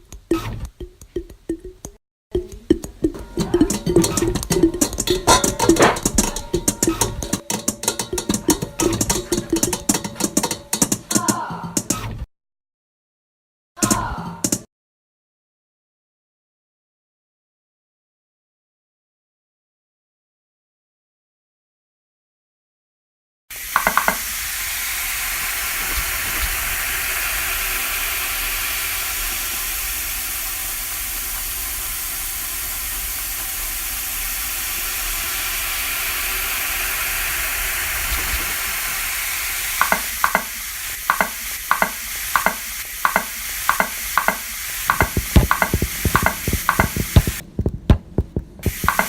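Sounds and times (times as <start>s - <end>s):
electronic sizzling hiss: 23.6s - 47.4s, 48.6s - 49.0s
electronic clicking pulse: 41.1s - 47.4s
deep thumps: 44.3s - 49.0s.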